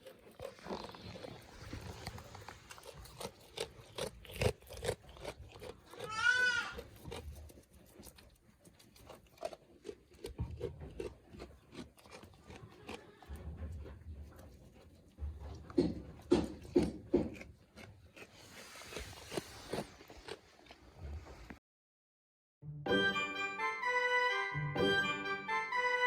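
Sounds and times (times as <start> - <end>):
goat bleating: 3.2 - 7.3, 12.3 - 13.4.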